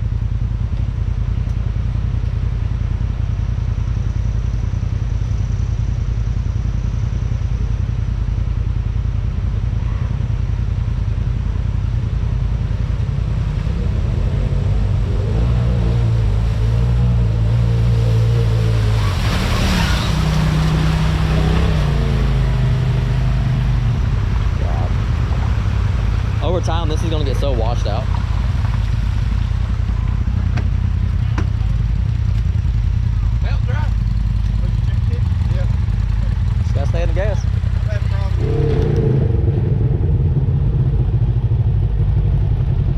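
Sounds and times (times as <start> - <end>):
off-road vehicle engine rumbling: 0.0 - 42.9
rushing noise: 13.7 - 30.5.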